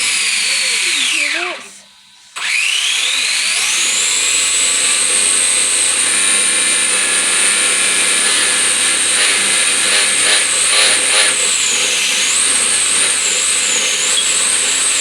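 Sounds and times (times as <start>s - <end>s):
electric motor high whine: 0.0s - 15.0s.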